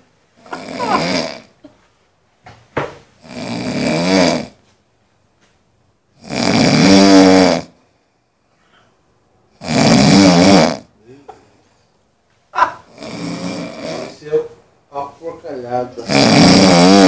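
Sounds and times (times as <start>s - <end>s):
man snoring loudly: 0.4s - 1.5s, 3.2s - 4.6s, 6.2s - 7.8s, 9.6s - 10.9s, 12.9s - 14.2s, 16.0s - 17.0s.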